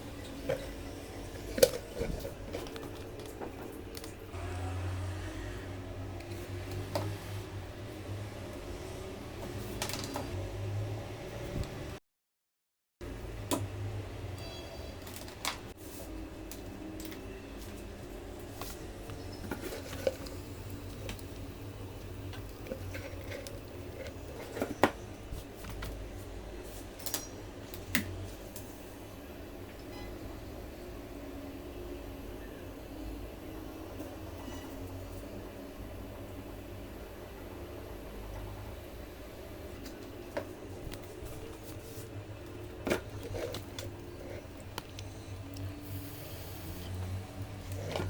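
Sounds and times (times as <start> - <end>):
humidifier electric hum: 13.0 - 48.0.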